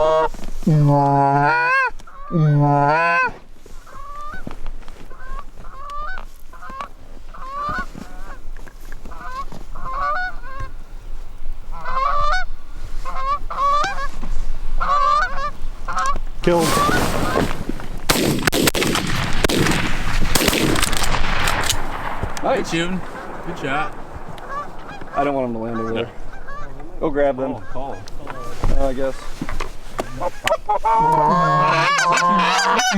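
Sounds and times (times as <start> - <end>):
geese honking: 0.0 - 10.9, 11.6 - 18.3, 19.5 - 32.9.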